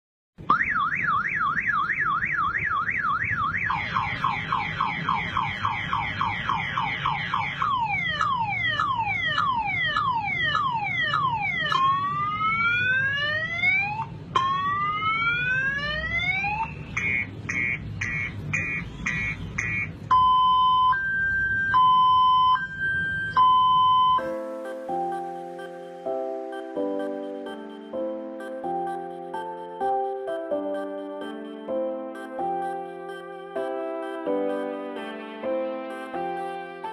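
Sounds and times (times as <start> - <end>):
car alarm siren: 0.4 - 27.8.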